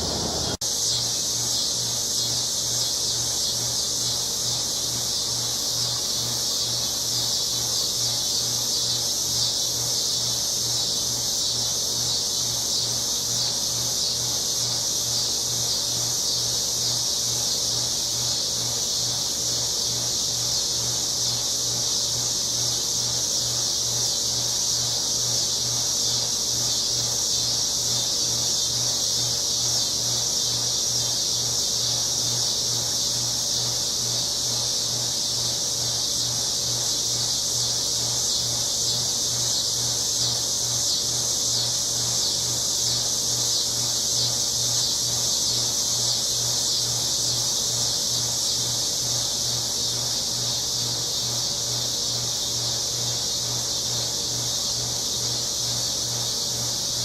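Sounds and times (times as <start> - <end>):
low pulsing hum: 0.0 - 0.6
insects buzzing shrilly: 0.0 - 57.0.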